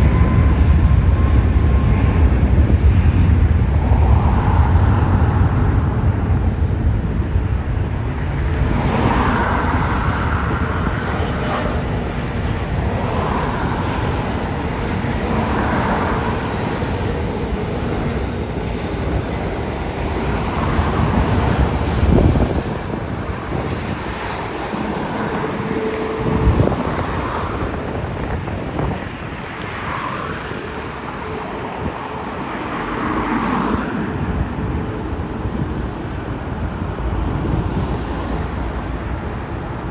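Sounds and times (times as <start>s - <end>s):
jet aircraft rumble: 0.0s - 39.9s
traffic passing: 0.0s - 39.9s
wind buffeting microphone: 0.0s - 39.9s.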